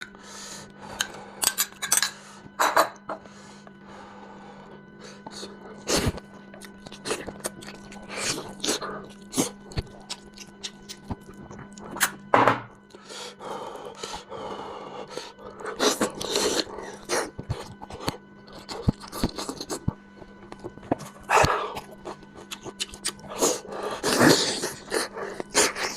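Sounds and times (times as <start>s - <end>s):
wet eating clicks and smacks: 6.6s - 12.2s, 16.1s - 23.4s.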